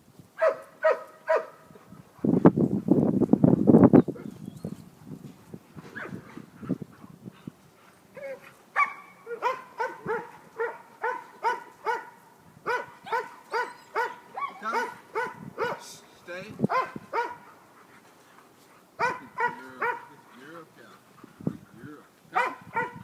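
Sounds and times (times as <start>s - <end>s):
dog barking: 0.4s - 1.6s, 8.8s - 15.9s, 16.7s - 17.5s, 19.0s - 20.2s, 22.3s - 23.0s.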